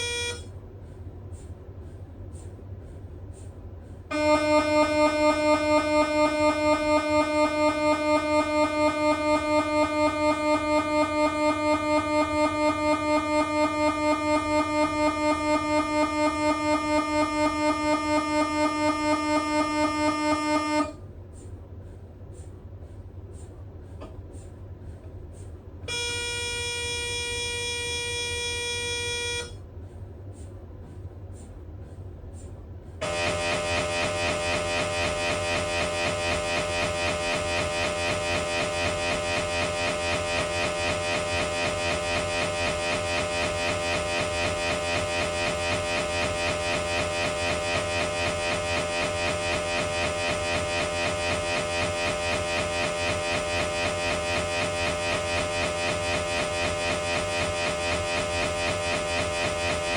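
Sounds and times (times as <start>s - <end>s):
mri scanner pulsing tone: 0.0s - 0.6s, 4.1s - 21.0s, 25.9s - 29.6s, 33.0s - 59.9s
low hum: 4.0s - 21.0s, 33.0s - 59.9s
steady higher tone: 4.1s - 20.9s, 33.0s - 59.9s.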